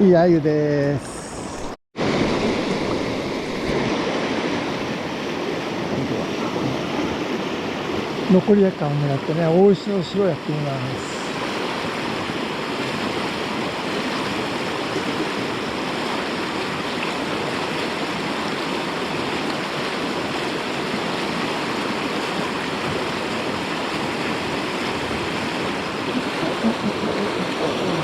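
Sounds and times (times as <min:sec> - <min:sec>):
river rushing over rocks: 0:10.5 - 0:28.0.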